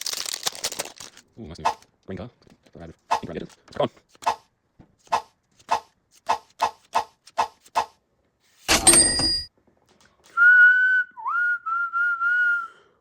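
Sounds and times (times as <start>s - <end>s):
person whistling a steady note: 10.3s - 13.0s.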